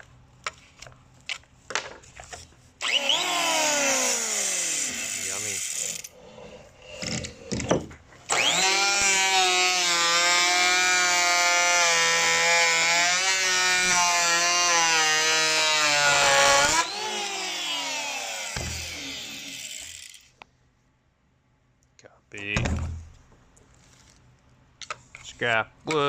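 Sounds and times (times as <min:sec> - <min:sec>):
electric planer whine: 0:02.8 - 0:05.3, 0:08.3 - 0:20.2.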